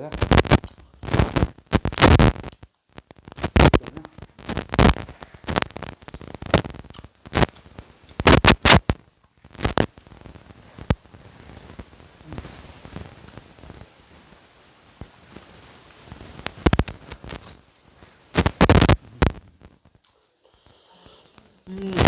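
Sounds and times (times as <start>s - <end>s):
crackling microphone: 0.0s - 22.0s
person eating close to microphone: 4.9s - 8.8s.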